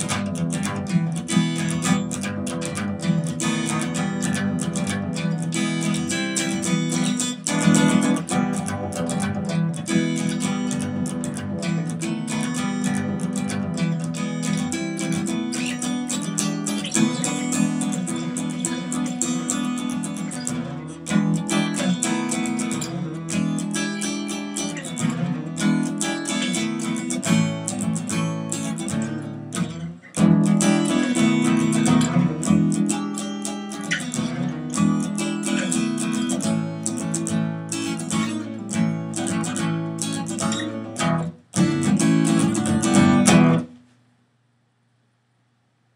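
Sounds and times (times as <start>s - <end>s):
acoustic guitar strumming: 0.0s - 43.8s.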